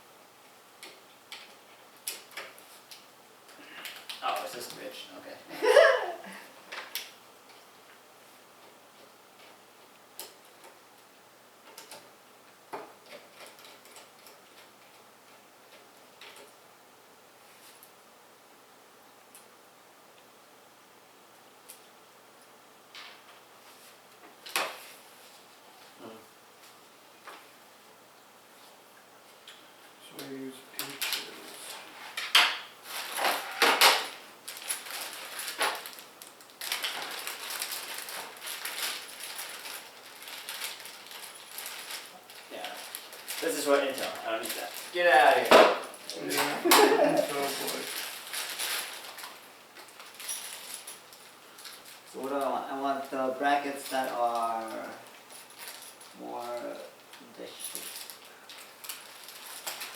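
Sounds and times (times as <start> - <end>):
packaging rustling: 30.8 - 52.2, 57.4 - 59.9
sharp crinkles and clatters: 30.8 - 52.6, 53.6 - 59.9.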